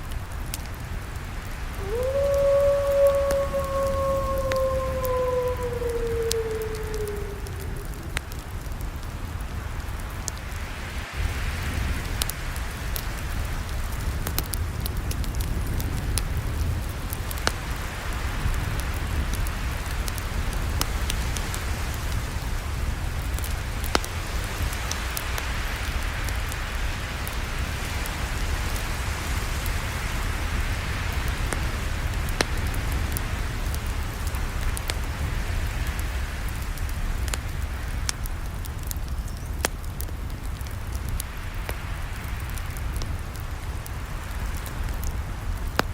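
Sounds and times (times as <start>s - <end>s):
wood crackling and popping: 0.0s - 10.4s, 31.2s - 45.9s
campfire burning: 0.0s - 45.9s.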